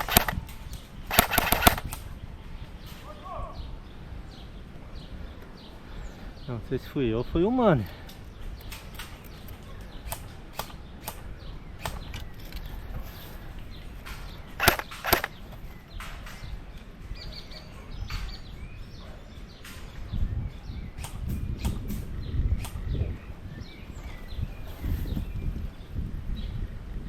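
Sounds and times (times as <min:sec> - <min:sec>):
airsoft guns popping: 0:00.0 - 0:02.1, 0:08.0 - 0:12.8, 0:14.0 - 0:16.5.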